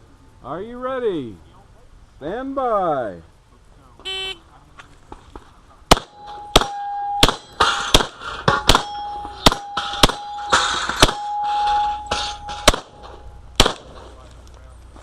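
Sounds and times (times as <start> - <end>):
pistol shots: 5.9 - 11.4, 12.3 - 14.3
steel targets ringing: 5.9 - 14.2.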